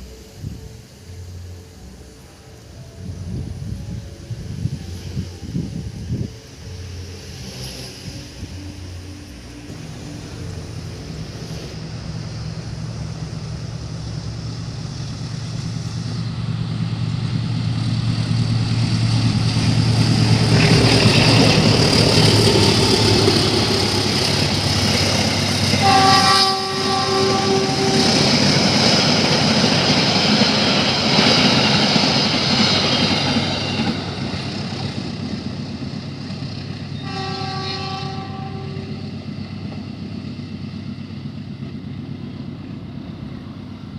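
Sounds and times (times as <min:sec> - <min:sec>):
locomotive engine drone: 0:00.0 - 0:43.9
train rushing past: 0:00.0 - 0:43.9
wheels on rail: 0:00.0 - 0:43.9
train horn blowing: 0:25.6 - 0:29.2, 0:36.9 - 0:39.3.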